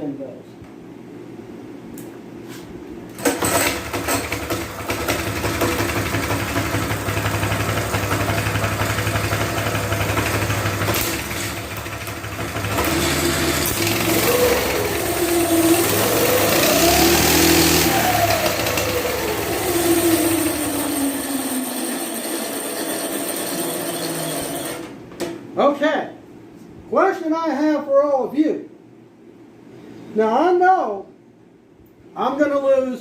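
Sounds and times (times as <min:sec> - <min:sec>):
small gas engine running: 0:03.2 - 0:24.8.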